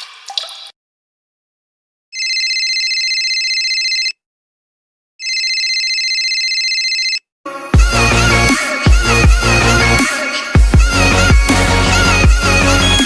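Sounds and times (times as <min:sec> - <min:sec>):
electronic telephone ringing: 0:02.2 - 0:04.2, 0:05.2 - 0:07.2.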